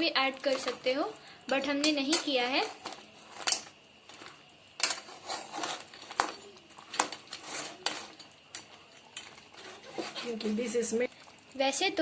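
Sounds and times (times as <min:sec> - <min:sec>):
spoon scraping in a pot: 0:02.1 - 0:08.3, 0:09.2 - 0:10.5.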